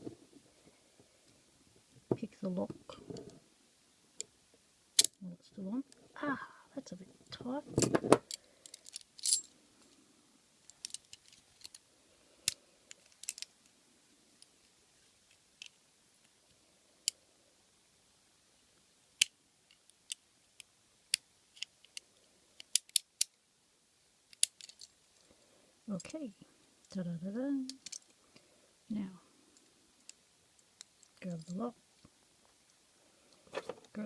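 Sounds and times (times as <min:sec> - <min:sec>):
handcuffs clicking and jingling: 0:08.3 - 0:09.5, 0:13.0 - 0:13.5, 0:24.3 - 0:24.9, 0:27.8 - 0:28.1.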